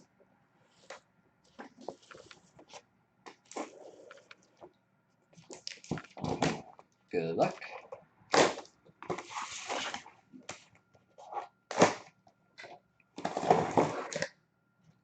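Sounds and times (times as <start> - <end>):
cardboard scraping: 9.1 - 10.1, 13.2 - 14.2.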